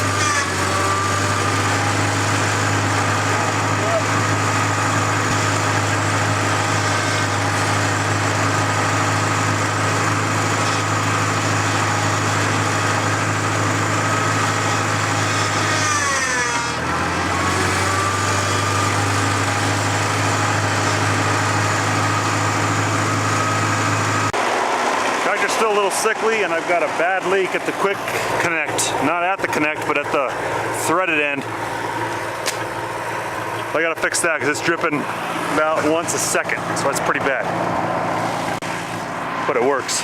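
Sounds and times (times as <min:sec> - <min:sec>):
tractor engine running: 0:00.0 - 0:40.0.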